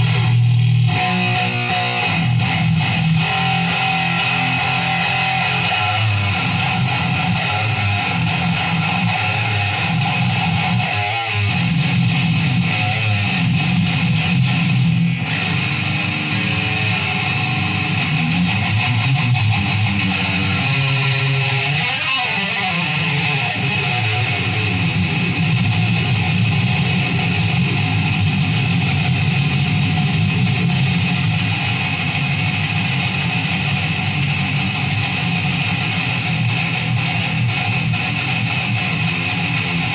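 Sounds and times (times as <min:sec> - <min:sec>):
guitar music: 0:00.0 - 0:39.9.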